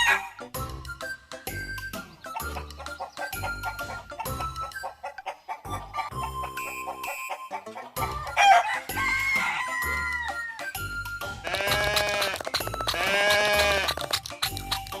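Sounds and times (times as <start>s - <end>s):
background music with steady beat: 0.0s - 15.0s
rooster crowing: 8.2s - 10.7s
farm animal calling: 11.3s - 15.0s.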